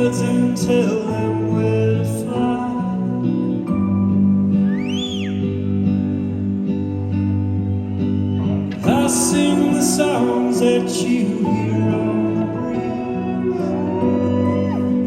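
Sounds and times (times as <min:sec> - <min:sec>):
person singing: 0:00.0 - 0:03.8, 0:08.7 - 0:15.0
guitar chords: 0:00.0 - 0:15.0.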